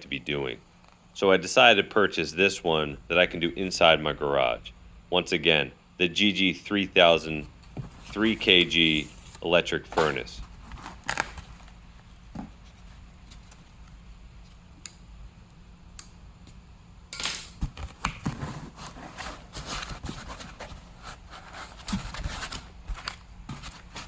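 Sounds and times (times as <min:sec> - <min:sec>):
packaging rustling: 0:10.0 - 0:11.9, 0:17.9 - 0:24.0.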